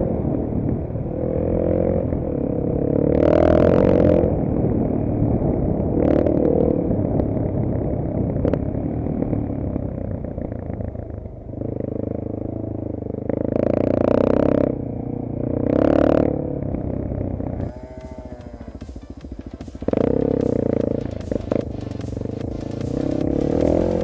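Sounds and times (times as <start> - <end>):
motorcycle engine revving: 0.0 - 24.0.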